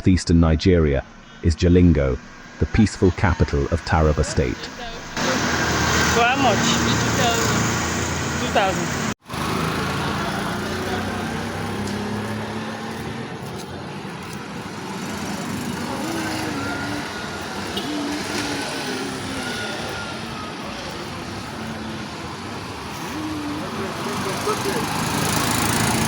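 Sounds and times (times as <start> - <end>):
road traffic engines: 0.0 - 26.0.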